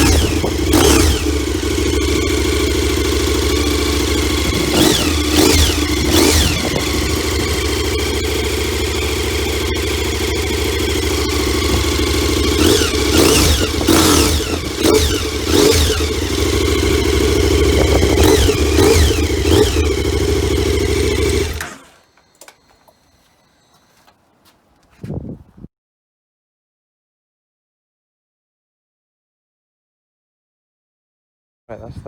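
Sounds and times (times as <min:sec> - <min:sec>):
motorcycle engine idling and revving: 0:00.0 - 0:24.1.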